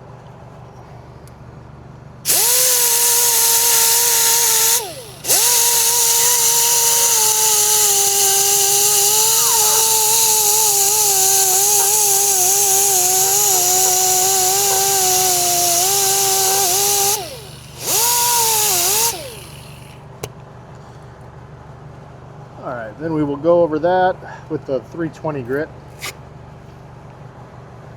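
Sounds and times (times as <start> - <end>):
grinder whining: 2.3 - 20.3.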